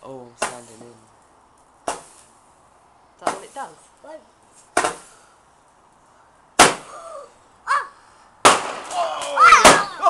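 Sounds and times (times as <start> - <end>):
firework cracks: 0.3 - 2.4, 3.2 - 3.8, 4.6 - 5.2, 6.5 - 7.0, 8.4 - 10.0.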